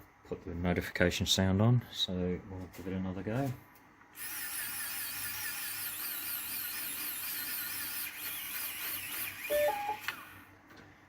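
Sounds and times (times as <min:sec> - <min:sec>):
small electric motors whining: 0:04.2 - 0:10.5
two-note rising beep: 0:09.5 - 0:10.0.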